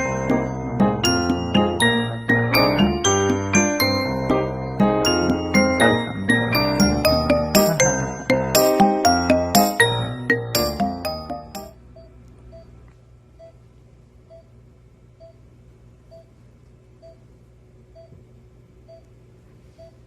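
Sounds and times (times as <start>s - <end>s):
music jingle: 0.0s - 11.8s
steady low hum: 0.0s - 20.0s.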